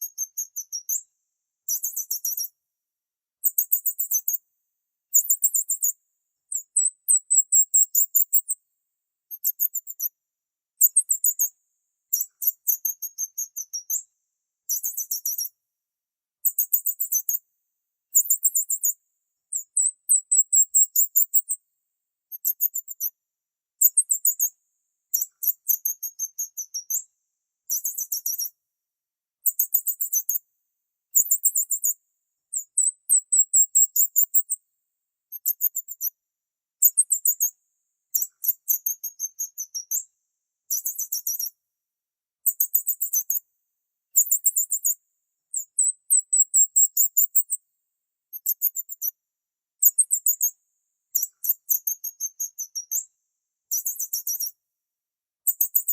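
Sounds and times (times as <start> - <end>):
small bird chirping: 0.0 - 2.6, 3.4 - 4.4, 5.1 - 8.6, 9.3 - 10.2, 10.8 - 15.6, 16.4 - 17.4, 18.1 - 21.6, 22.3 - 23.2, 23.8 - 28.6, 29.4 - 30.5, 31.1 - 34.6, 35.3 - 36.2, 36.8 - 40.1, 40.7 - 41.6, 42.4 - 43.5, 44.1 - 47.6, 48.3 - 49.2, 49.8 - 54.6, 55.4 - 55.9.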